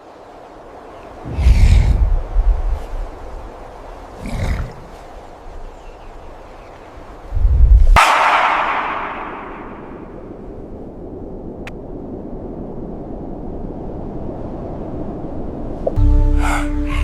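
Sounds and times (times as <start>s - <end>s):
low rumbling noise: 1.2s - 3.4s
loud boom: 8.0s - 10.4s.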